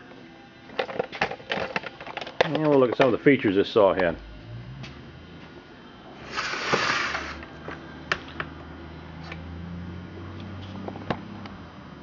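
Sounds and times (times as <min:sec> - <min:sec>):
rustling scrape of chainsaw handling: 0:06.2 - 0:07.4.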